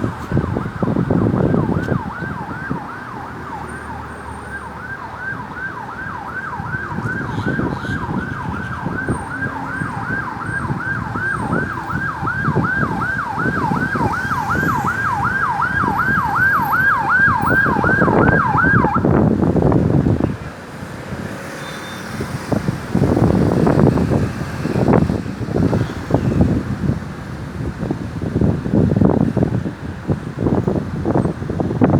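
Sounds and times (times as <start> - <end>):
ambulance siren yelping: 0.0 - 19.2
road traffic noise: 0.0 - 31.9.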